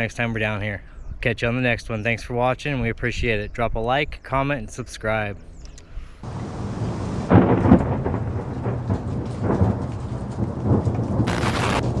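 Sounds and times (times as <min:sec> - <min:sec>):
steady rain: 0:06.2 - 0:12.0
thunder rumbling: 0:06.3 - 0:12.0.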